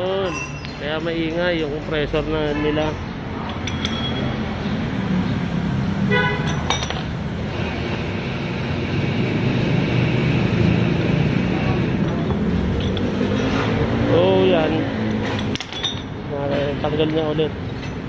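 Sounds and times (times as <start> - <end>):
street traffic: 0.0 - 18.0
vehicle horn toot: 6.1 - 6.6
air compressor running: 6.1 - 15.3.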